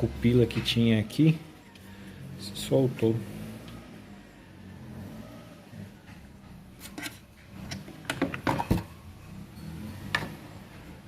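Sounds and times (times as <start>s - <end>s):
fan assembly clicking and knocking: 6.9s - 8.8s.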